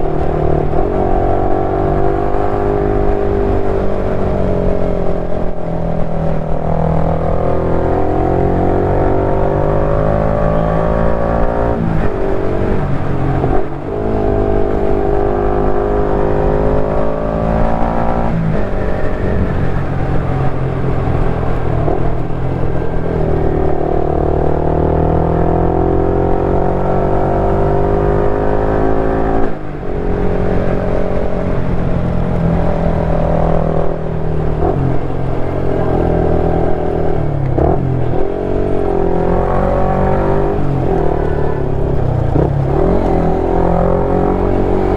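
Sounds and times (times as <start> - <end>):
motorcycle engine revving: 0.0 - 44.9
steady wind rush while riding: 0.0 - 44.9.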